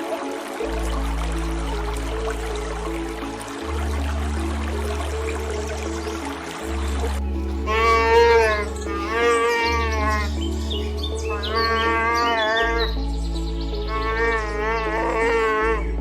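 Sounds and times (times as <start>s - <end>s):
soft background music: 0.0s - 16.0s
animal calling: 7.6s - 13.1s, 13.8s - 15.9s.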